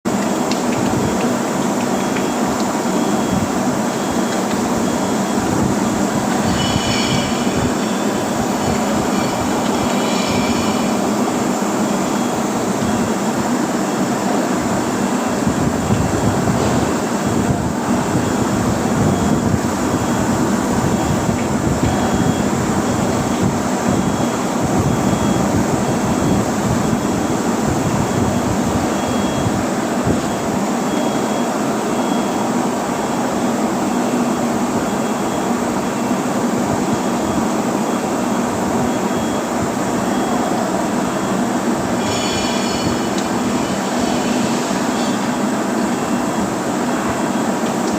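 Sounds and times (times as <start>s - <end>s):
foundry machinery rumble: 0.1s - 47.9s
faint high beep: 2.0s - 11.3s, 20.9s - 27.1s, 28.1s - 29.6s, 30.2s - 33.2s, 36.9s - 46.2s
brief high squeal: 6.4s - 11.1s, 42.0s - 45.4s.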